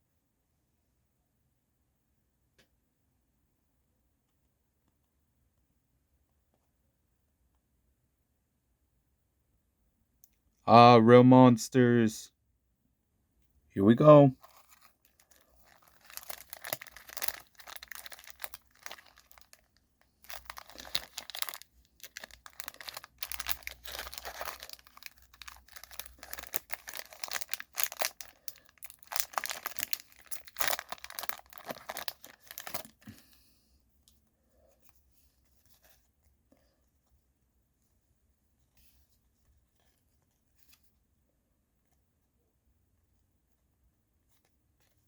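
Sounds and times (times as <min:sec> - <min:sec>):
plastic wrapper tearing and crinkling: 0:14.4 - 0:33.0.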